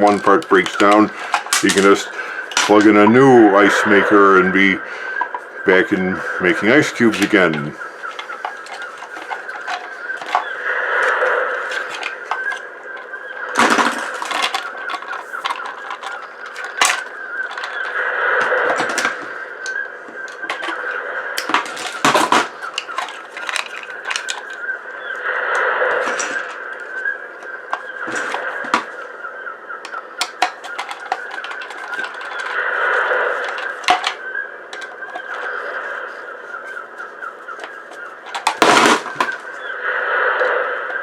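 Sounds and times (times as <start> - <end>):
sharp clicks and knocks: 0.0 - 3.3, 7.0 - 24.7, 26.0 - 29.0, 29.8 - 35.6, 37.4 - 39.6
plastic squeaking and cracking: 0.0 - 41.0.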